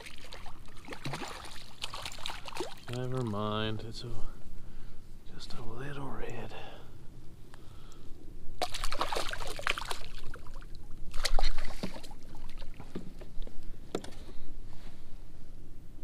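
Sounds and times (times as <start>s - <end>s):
water splashing and sloshing: 0.0s - 3.7s, 8.6s - 14.1s.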